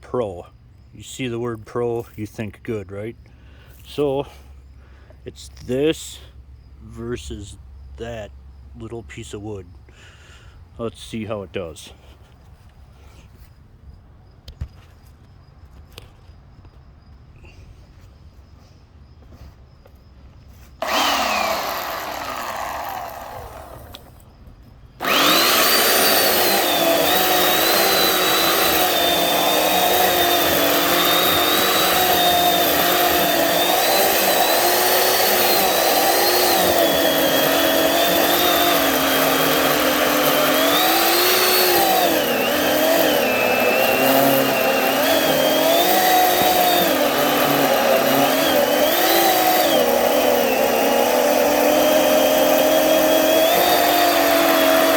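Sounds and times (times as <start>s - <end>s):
electric chainsaw motor whining: 20.8s - 24.2s, 25.0s - 54.9s.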